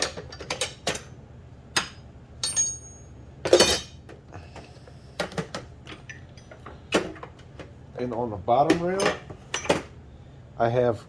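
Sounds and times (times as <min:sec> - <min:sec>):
metal tools clinking: 0:01.8 - 0:04.0, 0:08.8 - 0:09.8.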